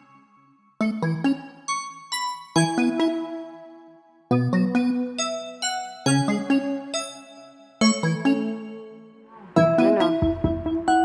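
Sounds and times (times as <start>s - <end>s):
music with steady beat: 9.6s - 11.0s.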